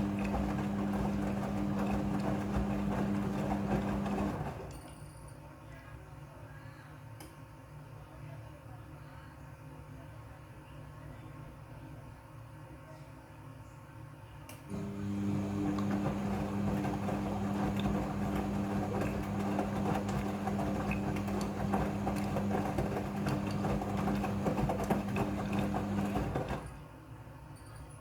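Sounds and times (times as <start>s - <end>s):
washing machine humming: 0.0s - 4.8s, 14.7s - 26.9s.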